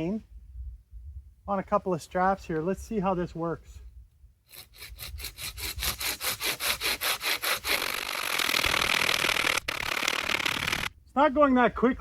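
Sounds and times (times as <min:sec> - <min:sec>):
chainsaw chain rasping through log: 0:04.5 - 0:10.9.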